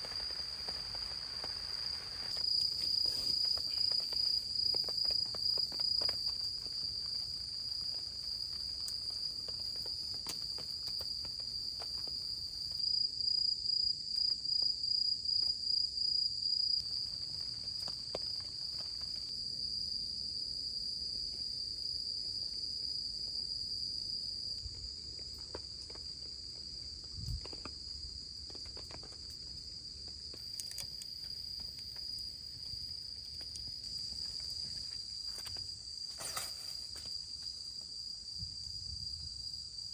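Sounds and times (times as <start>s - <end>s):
faint patter: 0.0s - 12.9s
insects chirring: 0.0s - 39.9s.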